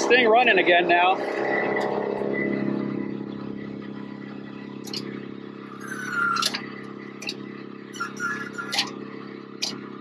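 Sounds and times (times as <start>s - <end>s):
wood chipper engine drone: 0.0s - 10.0s
short squeal: 5.7s - 6.8s, 7.9s - 9.0s.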